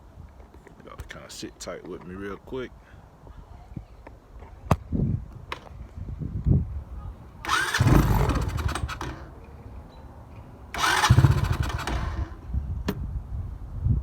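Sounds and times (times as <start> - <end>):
engine cranking without starting: 7.4 - 9.5, 10.7 - 12.5.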